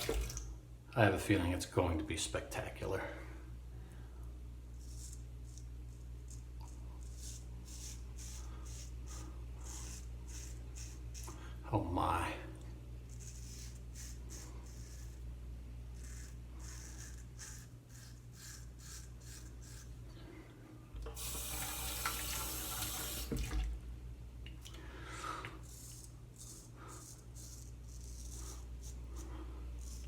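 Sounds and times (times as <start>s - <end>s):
tap running water: 0.0s - 0.5s, 21.0s - 23.8s
razor scraping stubble: 4.7s - 11.4s, 13.0s - 20.0s, 25.6s - 30.0s.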